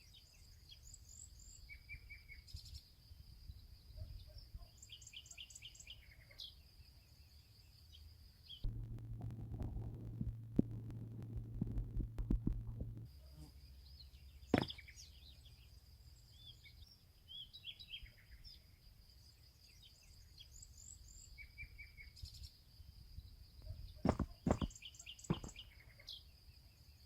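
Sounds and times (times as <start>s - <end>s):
low throbbing hum: 8.6s - 13.1s
small birds chirping: 14.0s - 18.6s, 23.7s - 25.8s
sharp knocks: 14.5s - 14.8s, 24.1s - 24.7s, 25.3s - 25.5s.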